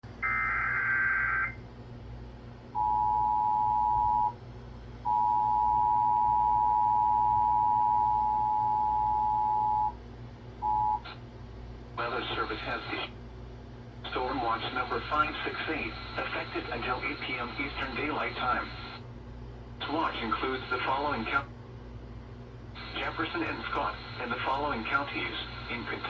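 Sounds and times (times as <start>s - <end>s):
warbling data screech: 0.2s - 1.6s.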